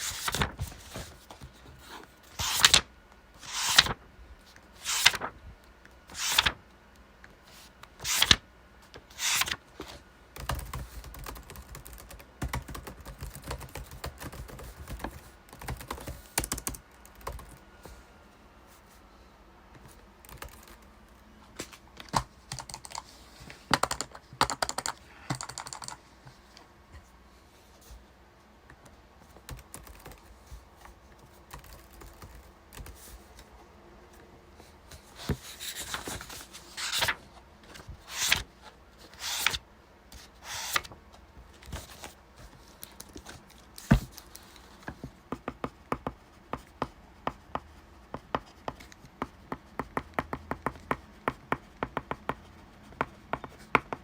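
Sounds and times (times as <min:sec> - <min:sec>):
computer keyboard typing: 0:10.4 - 0:17.6, 0:20.2 - 0:20.9, 0:22.5 - 0:23.0, 0:23.7 - 0:26.0, 0:29.5 - 0:30.2, 0:31.5 - 0:33.0.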